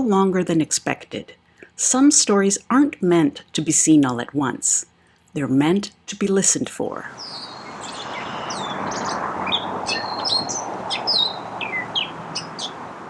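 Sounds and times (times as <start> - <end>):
catbird singing: 7.1 - 13.0.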